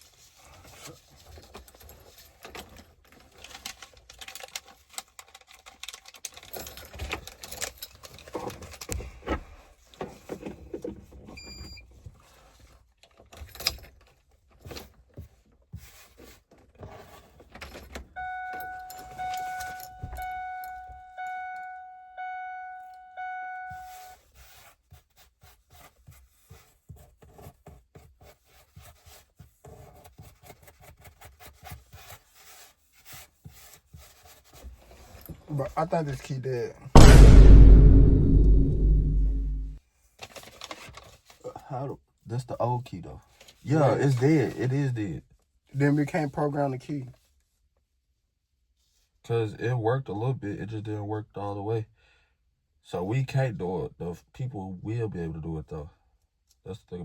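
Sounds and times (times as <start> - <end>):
short high beep: 18.2 - 23.9
truck warning chime: 18.2 - 23.9.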